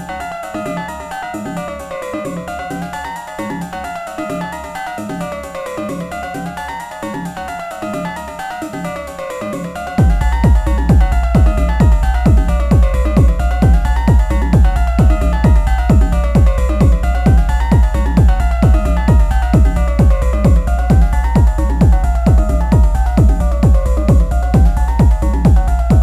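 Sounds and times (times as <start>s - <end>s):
kick drum: 8.2s - 26.0s
deep bass: 10.0s - 26.0s.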